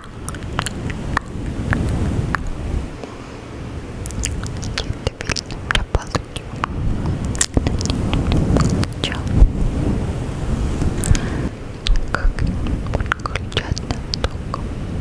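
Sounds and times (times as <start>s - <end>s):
wet mouth clicks: 0.2s - 3.1s, 4.0s - 9.4s, 10.9s - 14.7s.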